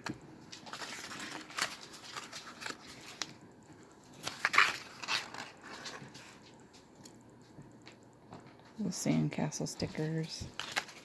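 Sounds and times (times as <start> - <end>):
paper rustling and crinkling: 0.0 - 7.2, 9.9 - 11.0.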